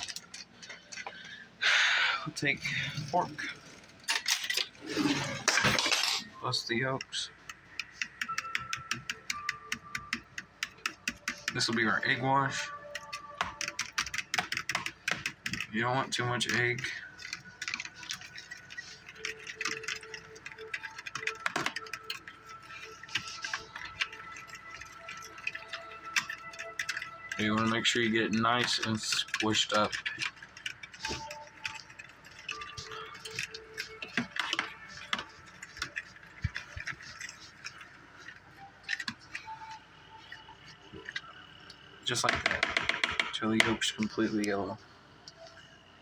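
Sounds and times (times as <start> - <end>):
fork beating eggs in a dish: 16.4 - 41.2.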